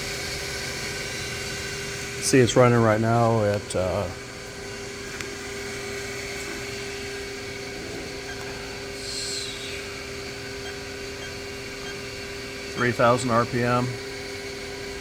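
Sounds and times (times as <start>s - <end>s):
milling machine humming: 0.0s - 15.0s.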